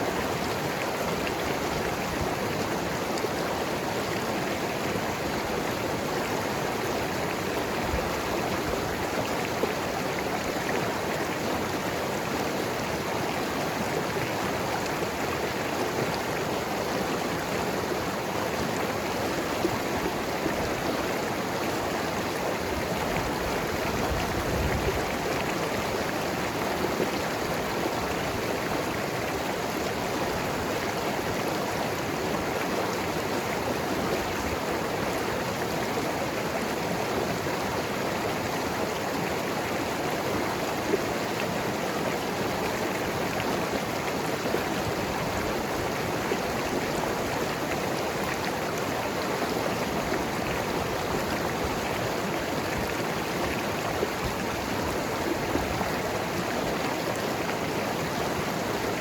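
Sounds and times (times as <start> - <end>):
river flowing over rocks: 0.0 - 59.0.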